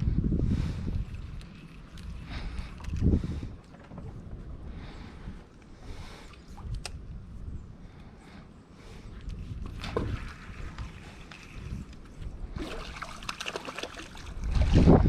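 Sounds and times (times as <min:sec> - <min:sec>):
low rumble: 0:00.0 - 0:06.1
water splashing against boat: 0:12.4 - 0:15.0.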